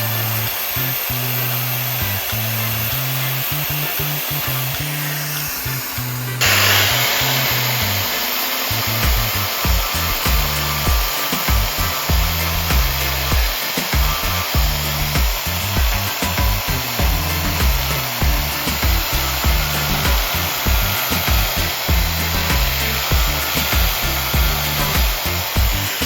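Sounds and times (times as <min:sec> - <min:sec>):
angle grinder grinding a disc: 0:00.0 - 0:26.0
music with bass beat: 0:00.0 - 0:26.0.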